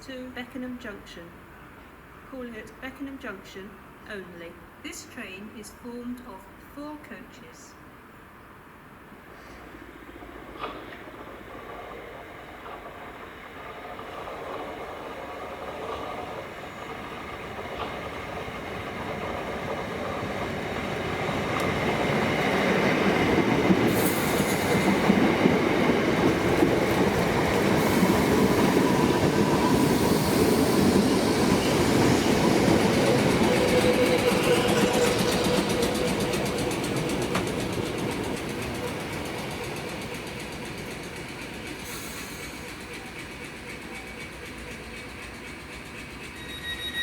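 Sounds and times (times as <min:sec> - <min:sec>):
electric train running on rails: 0:08.3 - 0:47.0
train wheel clatter: 0:09.6 - 0:47.0.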